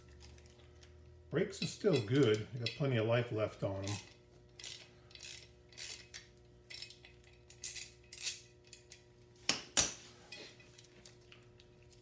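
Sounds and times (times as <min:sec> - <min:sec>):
metal parts clinking: 0:03.8 - 0:09.0.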